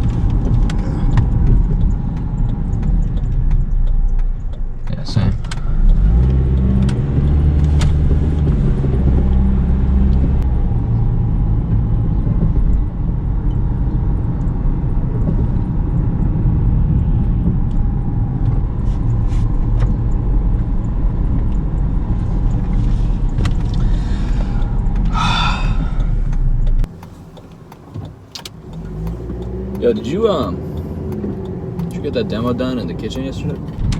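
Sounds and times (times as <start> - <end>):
car engine rumble: 0.0 - 33.9
road noise: 0.0 - 33.9.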